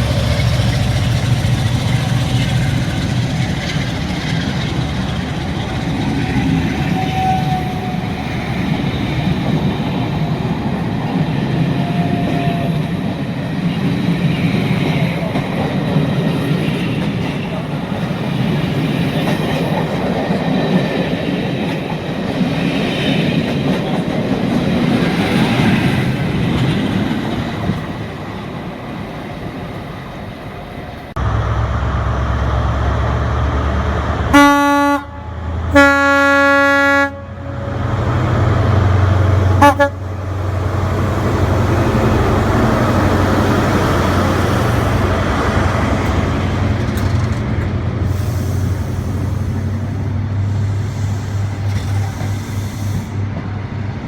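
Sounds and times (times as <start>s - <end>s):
low train drone: 0.0s - 54.0s
train running rumble: 0.0s - 54.0s
train horn blasts: 34.3s - 38.1s, 39.4s - 40.4s.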